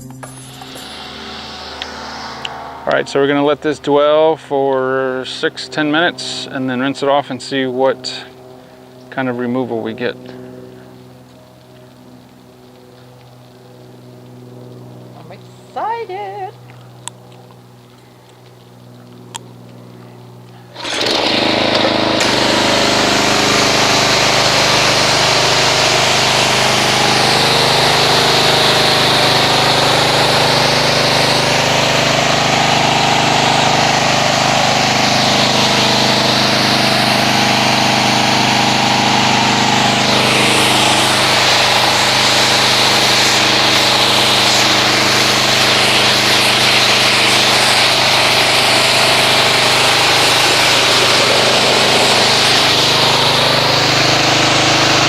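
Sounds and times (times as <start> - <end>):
pressure washer motor humming: 0.0 - 55.0
water spray hissing: 20.6 - 55.0.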